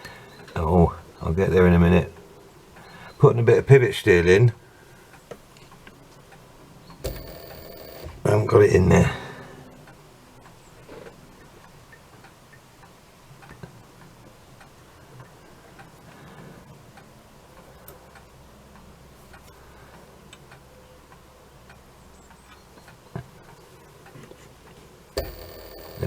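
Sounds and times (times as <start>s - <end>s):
steady low hum: 7.0s - 9.4s, 25.2s - 26.0s.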